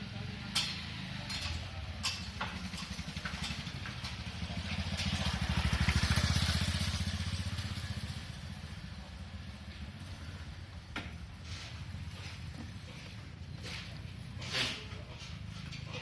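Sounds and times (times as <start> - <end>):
small engine running: 2.4 - 8.5.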